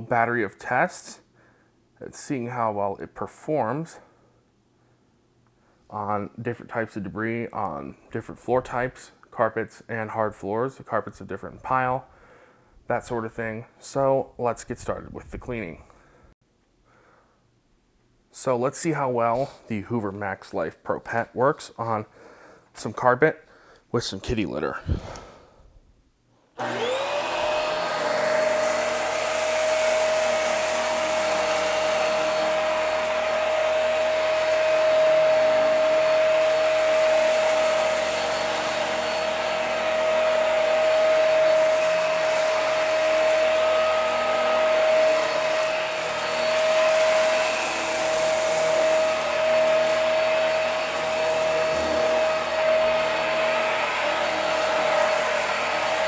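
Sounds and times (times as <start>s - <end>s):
vacuum cleaner motor whine: 26.6s - 56.0s.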